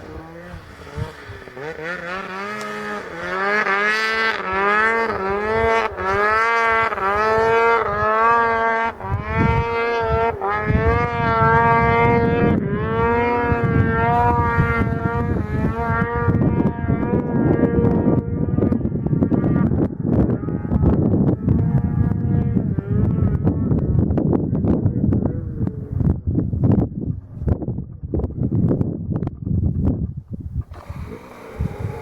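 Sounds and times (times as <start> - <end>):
snowmobile engine revving: 0.0 - 23.6, 30.7 - 32.0.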